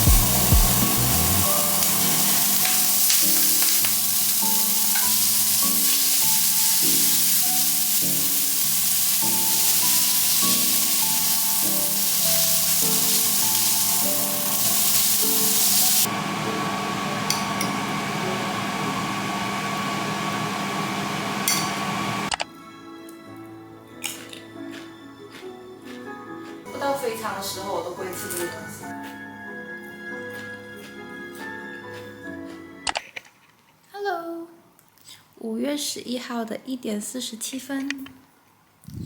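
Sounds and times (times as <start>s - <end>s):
melodic background music: 0.0s - 15.9s, 22.4s - 32.9s
food sizzling in a frying pan: 0.0s - 22.3s.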